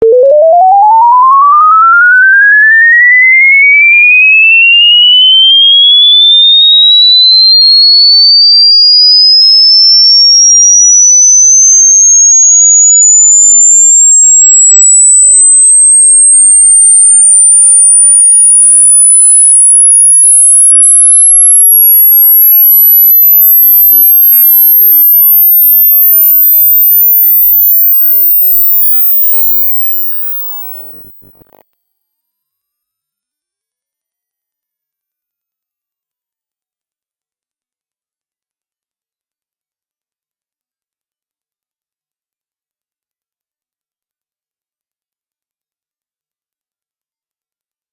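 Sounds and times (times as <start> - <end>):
rising sine tone sweep: 0.0 - 4.3, 10.7 - 33.1.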